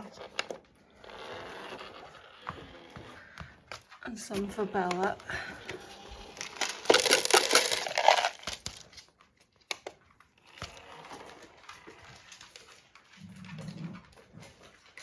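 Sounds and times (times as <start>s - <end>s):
cat food packet crinkling: 4.9s - 10.0s.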